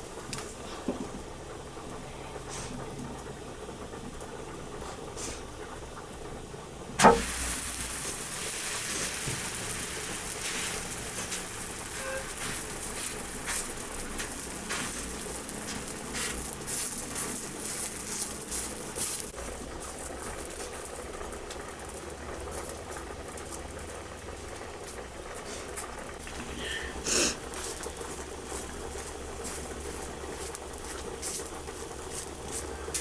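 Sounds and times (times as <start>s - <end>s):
cooking sizzle with crackles: 0.0s - 1.9s, 2.5s - 33.0s
sharp knock: 7.0s - 7.2s.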